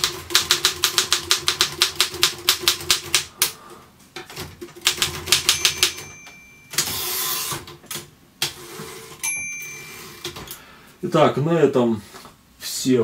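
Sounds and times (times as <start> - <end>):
typewriter carriage return rattle: 4.3 - 9.3
typewriter key strikes: 4.8 - 7.0
typewriter margin bell: 4.9 - 7.5, 9.2 - 10.4.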